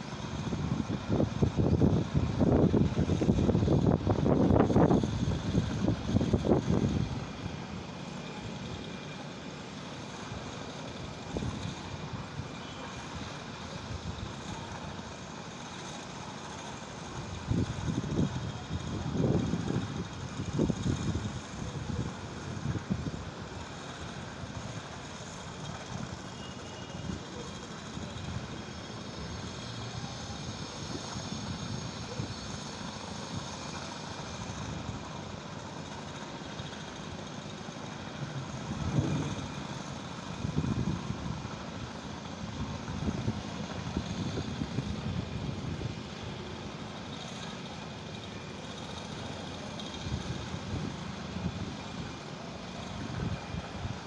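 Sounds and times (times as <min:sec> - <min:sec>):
steady engine-like drone: 0:00.0 - 0:54.0.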